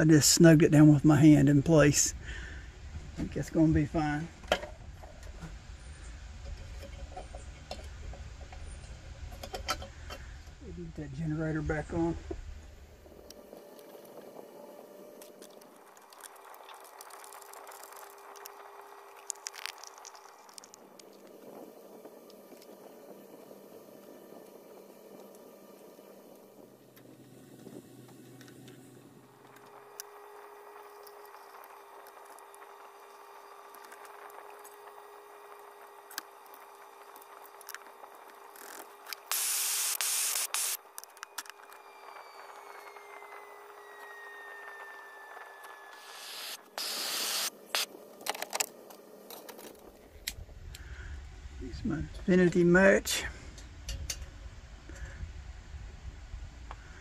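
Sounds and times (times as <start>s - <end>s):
spray hiss: 39.2s - 40.8s, 46.0s - 47.9s.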